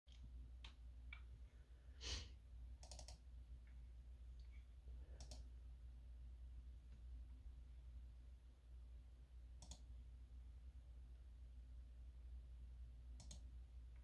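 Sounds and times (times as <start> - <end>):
low steady hum: 0.1 - 14.0
computer keyboard clicks: 2.8 - 3.2, 5.2 - 5.5, 9.6 - 9.8, 13.2 - 13.5
mouse clicks: 2.8 - 3.2, 5.2 - 5.5, 9.6 - 9.9, 13.2 - 13.5.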